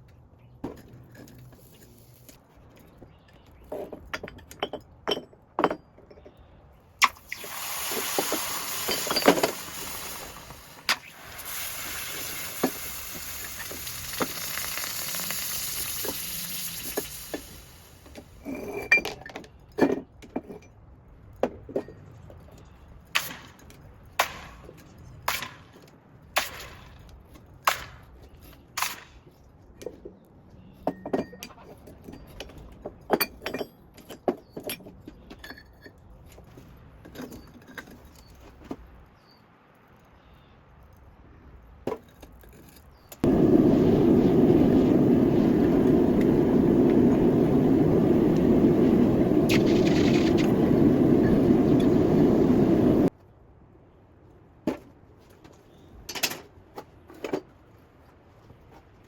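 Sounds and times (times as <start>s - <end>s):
steady hiss: 7.1s - 18.4s, 43.2s - 53.1s.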